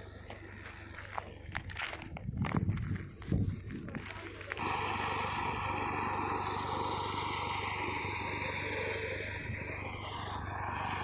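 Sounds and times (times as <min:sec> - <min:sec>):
harvesting machine engine hum: 0:00.0 - 0:11.0
machinery rushing noise: 0:03.1 - 0:11.0.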